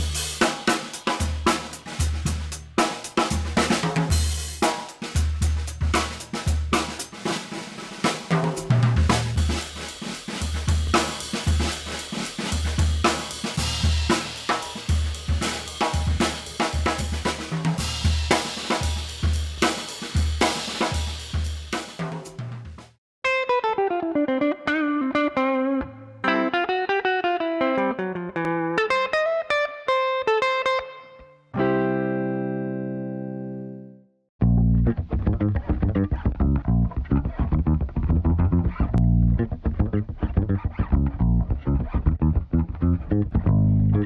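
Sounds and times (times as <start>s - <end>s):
drum kit playing groove: 0.0s - 23.0s.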